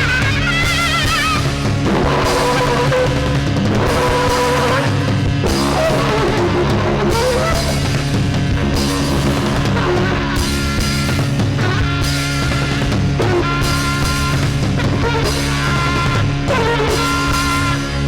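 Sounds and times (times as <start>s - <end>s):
band playing trance punk: 0.0s - 18.0s.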